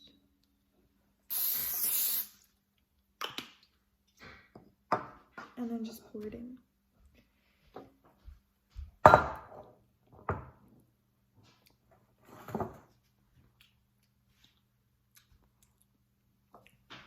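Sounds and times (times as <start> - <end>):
kitchenware knocking: 9.0 - 10.6.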